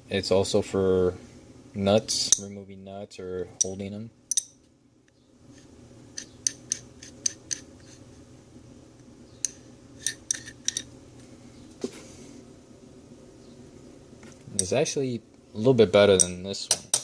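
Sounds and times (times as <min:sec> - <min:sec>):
faint steady hum: 0:00.0 - 0:17.0
metallic ratchet clicks: 0:04.3 - 0:04.5.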